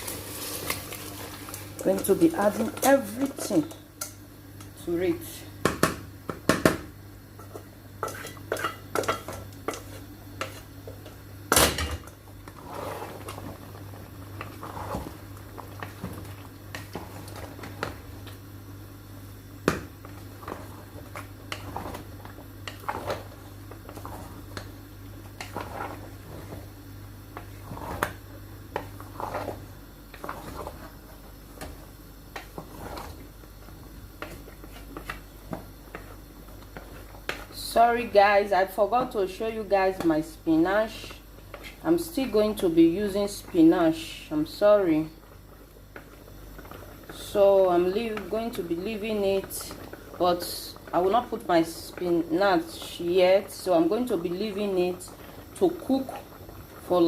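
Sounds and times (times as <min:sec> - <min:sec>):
low steady hum: 0:00.0 - 0:57.0
spoon clinking and scraping pot: 0:07.4 - 0:10.6.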